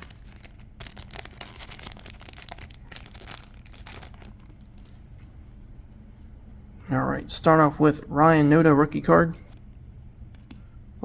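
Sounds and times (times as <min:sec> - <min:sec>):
foil wrapper tearing and crinkling: 0:00.0 - 0:04.6.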